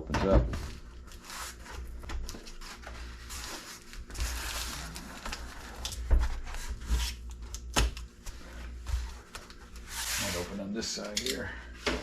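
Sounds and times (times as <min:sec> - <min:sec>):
cardboard scraping and rustling: 0:00.6 - 0:07.2.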